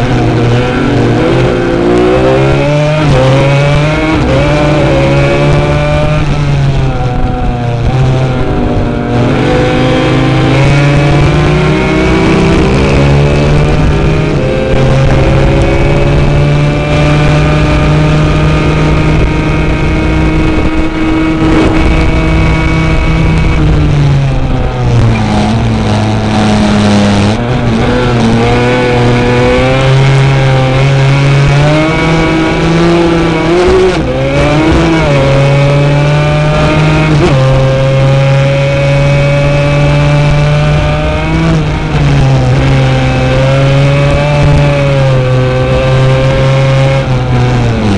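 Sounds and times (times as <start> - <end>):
quad engine revving: 0.0 - 47.9.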